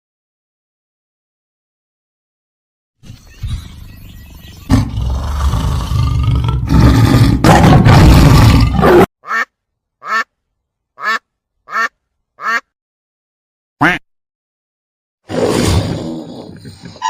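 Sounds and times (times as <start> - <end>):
rough noisy animal call: 4.6 - 9.1.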